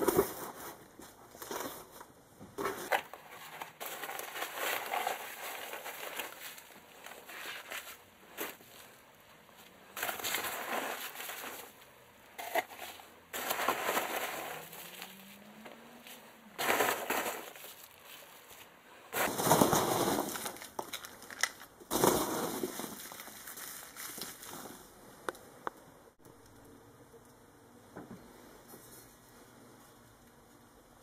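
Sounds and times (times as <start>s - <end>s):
packaging crinkling and rustling: 0.0s - 9.0s, 9.6s - 24.9s.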